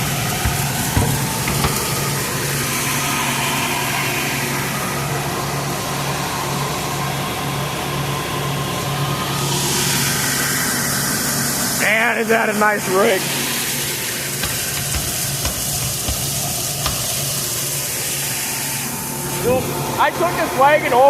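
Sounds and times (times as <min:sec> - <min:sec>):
knocks: 0:00.0 - 0:02.3, 0:14.4 - 0:17.2
diesel engine humming: 0:00.0 - 0:03.3.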